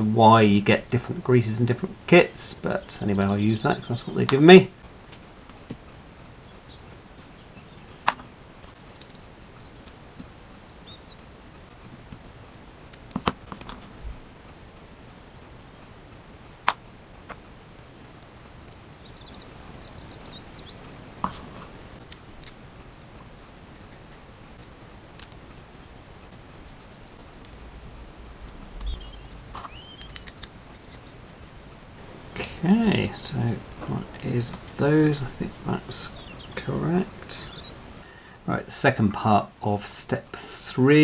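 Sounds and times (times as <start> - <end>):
birds chirping faintly: 0.0 - 41.0.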